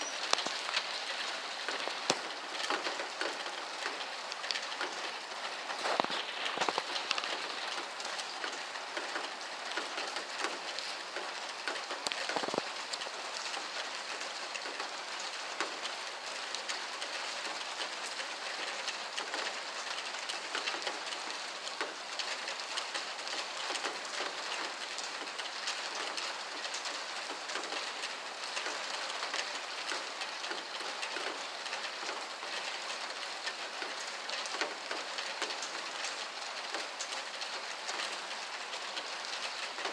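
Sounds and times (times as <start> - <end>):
heavy rain: 0.0 - 39.9
loud raindrop splat: 10.5 - 13.0.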